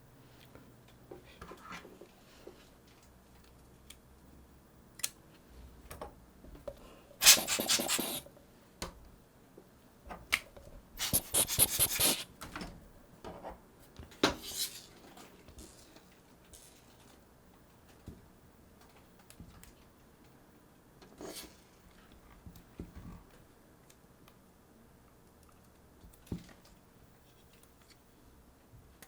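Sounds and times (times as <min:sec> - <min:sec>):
rustling and scraping: 0:11.0 - 0:12.3.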